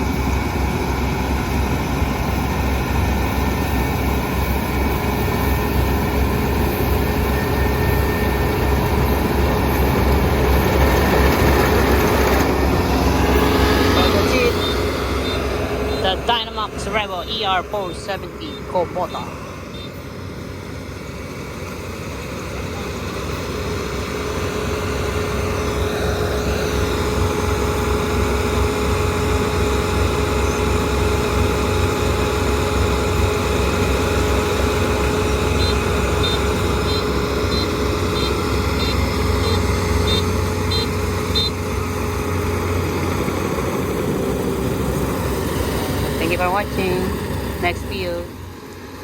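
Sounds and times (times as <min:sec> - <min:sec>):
combine harvester running: 0:00.0 - 0:49.0.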